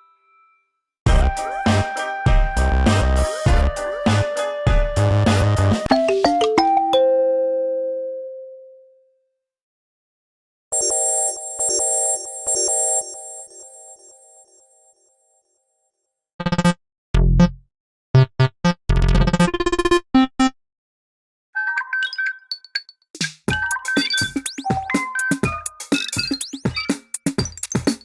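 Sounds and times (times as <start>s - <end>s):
phone ringtone melody: 5.9s - 7.4s, 10.7s - 14.6s, 23.5s - 28.0s
bright chiming tone: 10.8s - 14.4s.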